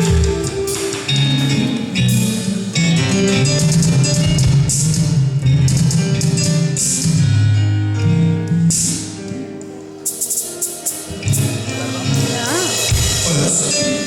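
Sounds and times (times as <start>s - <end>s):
drums: 0.0s - 7.6s, 8.3s - 14.0s
bass line: 0.0s - 8.9s
guitar playing: 0.0s - 14.0s.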